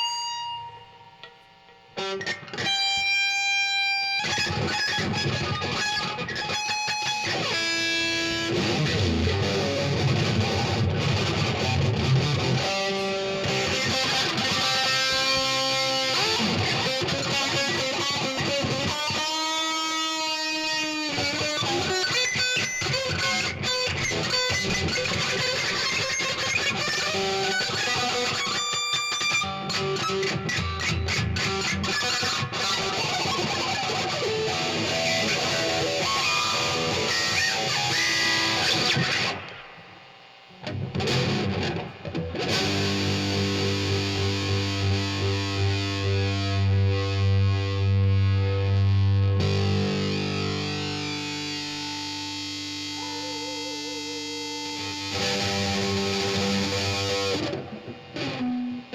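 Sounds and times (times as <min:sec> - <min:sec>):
distorted electric guitar: 0:00.0 - 0:58.9
rock band playing: 0:40.7 - 0:47.9, 0:48.5 - 0:58.9.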